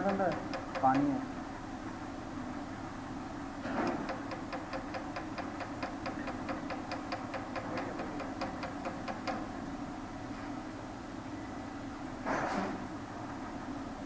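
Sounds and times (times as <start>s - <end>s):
rapid mechanical clicks: 0.0s - 1.2s, 3.8s - 9.6s
steady low hum: 0.0s - 14.0s.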